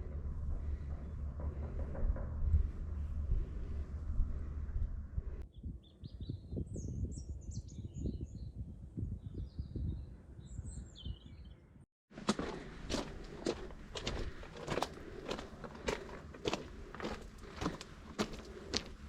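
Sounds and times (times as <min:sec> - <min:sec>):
low thumps: 0:00.0 - 0:05.4
footsteps crunching on trail: 0:12.1 - 0:19.0.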